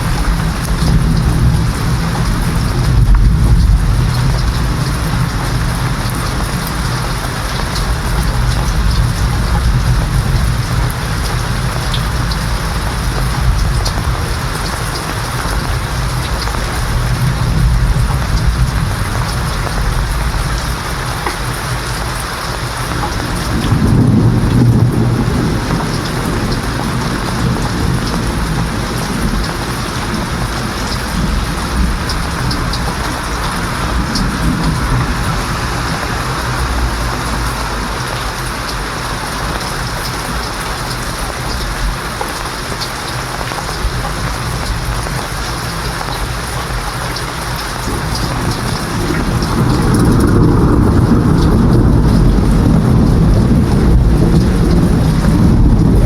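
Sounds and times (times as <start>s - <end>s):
heavy rain falling: 0.0s - 56.0s
thunder rumbling: 0.0s - 56.0s.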